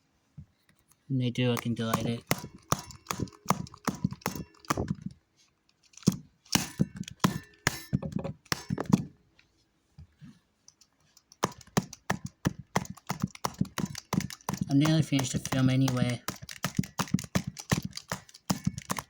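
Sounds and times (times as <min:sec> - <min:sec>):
plastic remote control being whacked: 0:01.5 - 0:05.1, 0:11.4 - 0:19.0.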